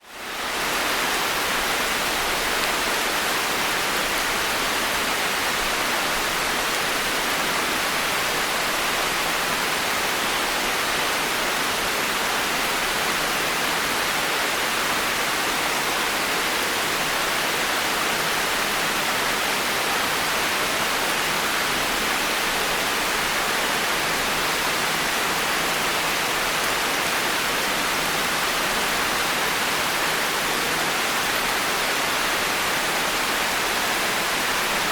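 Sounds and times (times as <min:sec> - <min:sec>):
heavy rain on foliage: 0:00.0 - 0:34.9.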